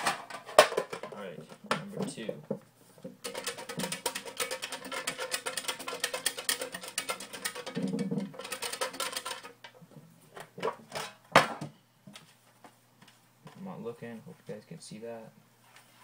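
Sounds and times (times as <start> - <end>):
paper slips rattling in a box: 3.2 - 9.6.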